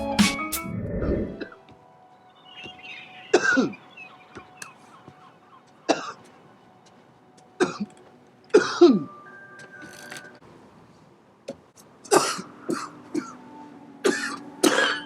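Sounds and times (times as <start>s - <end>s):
man coughing: 5.9s - 6.2s, 12.1s - 13.4s.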